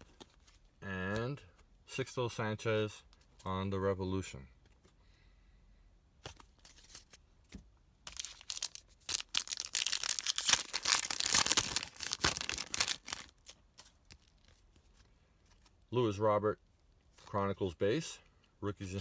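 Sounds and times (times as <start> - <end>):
plastic wrapper tearing and crinkling: 8.1 - 14.6.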